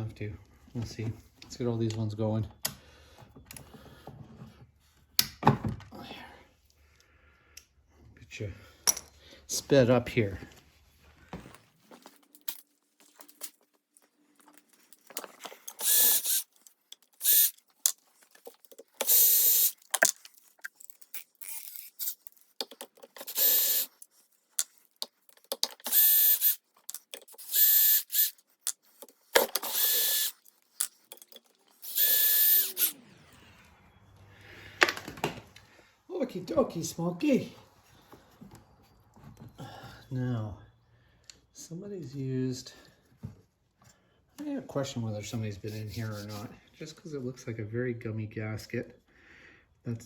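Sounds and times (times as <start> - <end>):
clinks of bolts and tools: 8.8 - 9.2, 12.0 - 13.6
power drill whine: 15.8 - 16.4, 17.2 - 17.6, 19.0 - 19.8, 23.2 - 23.9, 25.8 - 26.6, 27.4 - 28.4, 29.4 - 30.4, 31.7 - 34.4.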